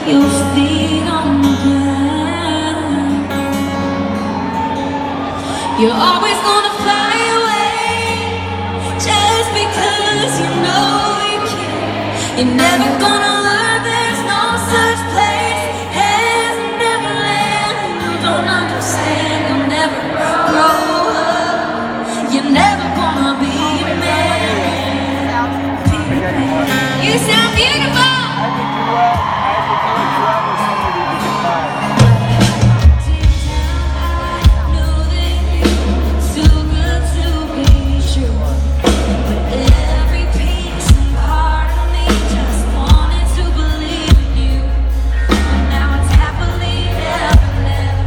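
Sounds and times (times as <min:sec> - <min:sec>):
woman singing: 0:00.0 - 0:03.9, 0:05.5 - 0:28.4, 0:32.6 - 0:48.0
band accompaniment: 0:21.8 - 0:48.0.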